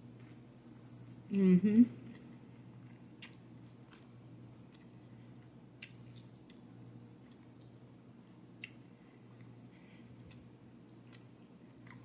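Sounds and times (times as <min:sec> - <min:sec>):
low steady hum: 0:00.0 - 0:12.0
quiet chewing: 0:02.0 - 0:07.8, 0:08.6 - 0:12.0.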